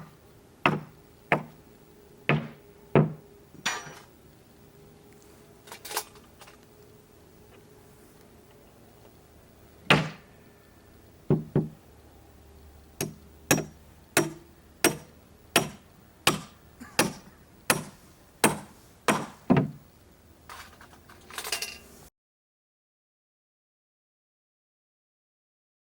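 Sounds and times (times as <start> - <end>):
hammering on timber: 0.0 - 1.6, 2.3 - 3.2, 9.9 - 10.2, 11.3 - 11.8, 13.0 - 19.8.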